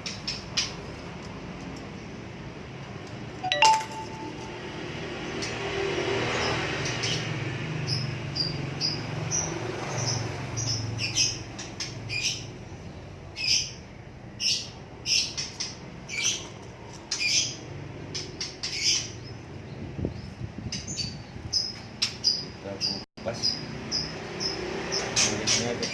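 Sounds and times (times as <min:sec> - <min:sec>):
small bird chirping: 0:06.8 - 0:25.9.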